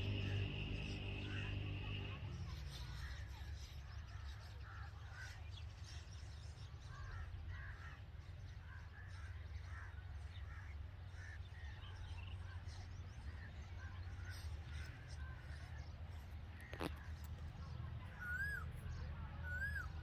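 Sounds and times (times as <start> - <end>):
steady low hum: 0.0 - 3.4
birds chirping: 0.0 - 20.0.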